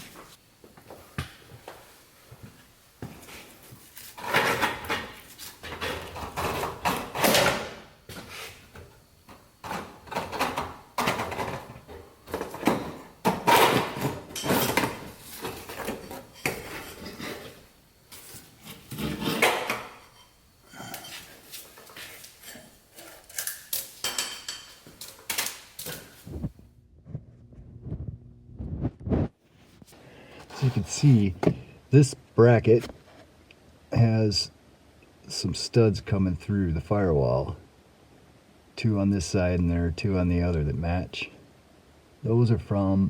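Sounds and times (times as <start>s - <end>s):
tools and metal parts clanking: 4.0s - 7.8s, 9.6s - 17.6s, 18.2s - 26.2s.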